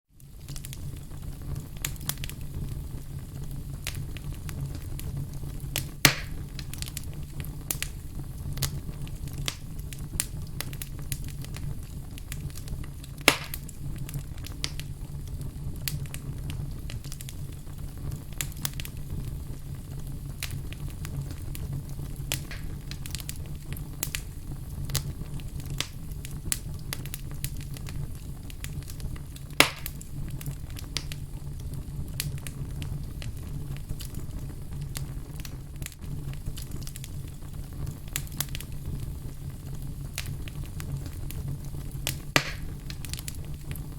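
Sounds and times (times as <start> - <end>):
fire crackling: 0.1 - 43.9
flames rumbling: 0.1 - 43.9
wood popping: 13.2 - 13.7, 22.3 - 23.3, 42.0 - 43.3.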